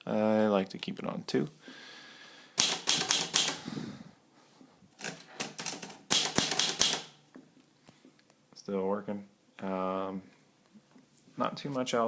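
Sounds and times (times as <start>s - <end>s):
manual typewriter clacking: 2.6s - 3.6s, 5.0s - 7.2s.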